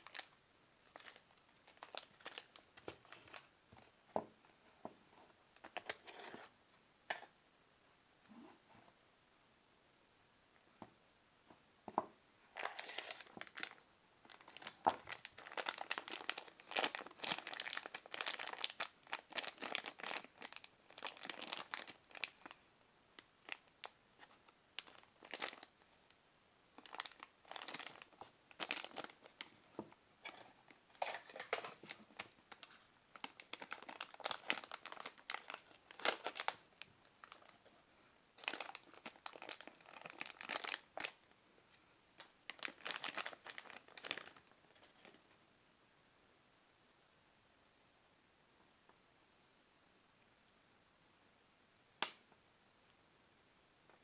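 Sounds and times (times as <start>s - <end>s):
packaging crinkling: 0.0s - 3.5s, 12.6s - 22.6s, 23.4s - 25.8s, 26.8s - 29.6s, 30.2s - 37.5s, 38.4s - 41.2s, 42.2s - 45.1s.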